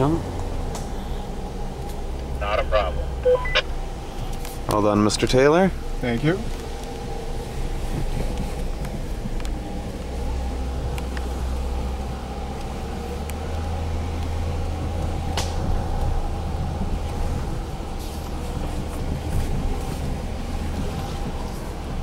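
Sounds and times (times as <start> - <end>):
engine and tyres rumbling: 0.0 - 22.0
faint steady whine: 1.0 - 5.9.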